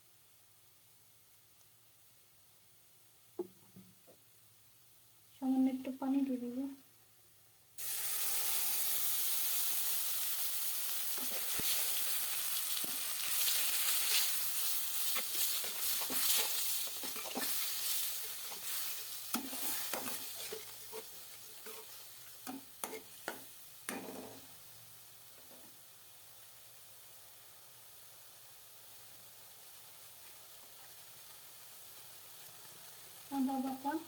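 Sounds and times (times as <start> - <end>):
spices sizzling in hot oil: 7.4 - 34.0
stirring scrapes against pan: 11.0 - 24.4.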